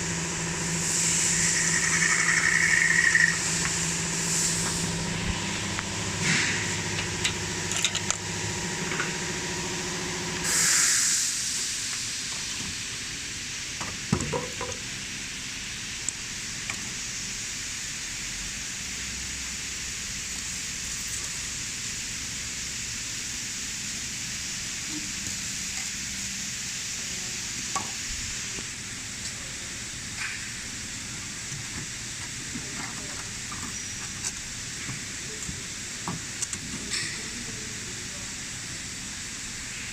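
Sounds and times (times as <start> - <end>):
machine hum: 0.0 - 10.5
steady hiss: 0.6 - 7.0, 10.4 - 39.9.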